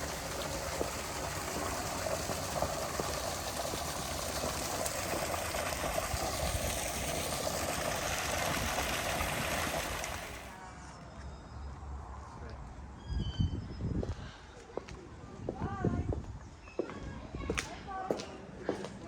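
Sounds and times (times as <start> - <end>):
running water rushing: 0.0 - 10.6.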